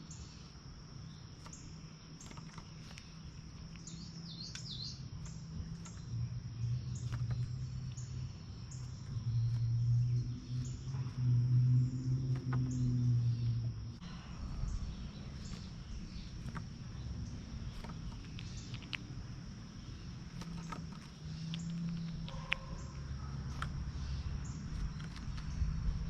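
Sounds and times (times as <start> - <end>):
insects droning: 0.0 - 26.0
low hum: 0.0 - 26.0
sharp clicks: 1.4 - 6.1, 15.4 - 23.9, 24.5 - 25.7.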